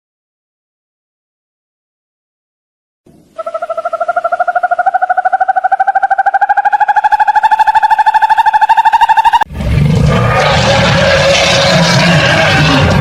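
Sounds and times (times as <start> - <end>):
animal pulsed trill: 3.4 - 9.5.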